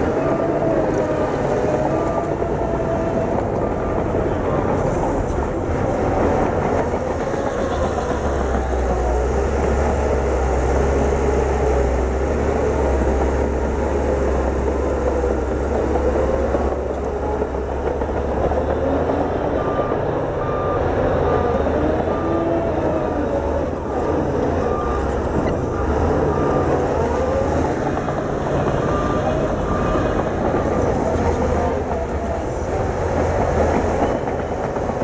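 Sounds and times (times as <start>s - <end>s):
bulldozer diesel engine droning: 0.0s - 35.0s
reversing alarm beeps: 15.7s - 32.4s.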